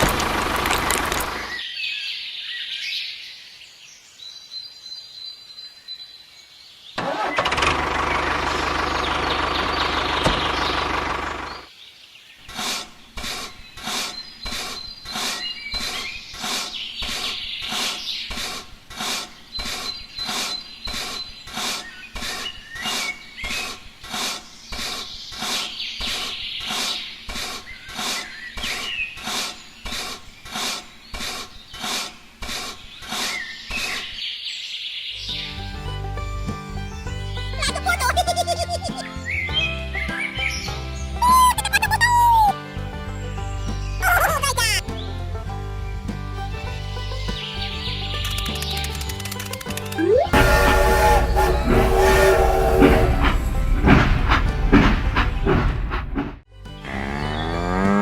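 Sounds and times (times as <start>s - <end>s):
birds chirping: 0.0s - 53.5s
rhythmic rasping: 48.3s - 55.4s
loud machine running: 50.2s - 54.0s.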